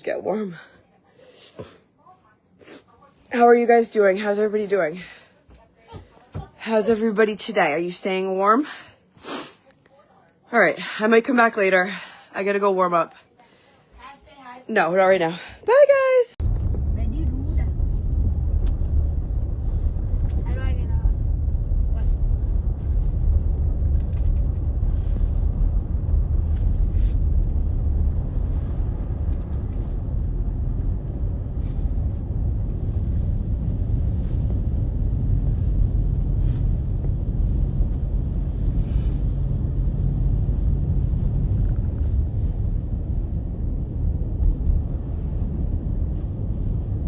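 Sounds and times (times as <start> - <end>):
car engine rumble inside cabin: 16.4 - 47.0.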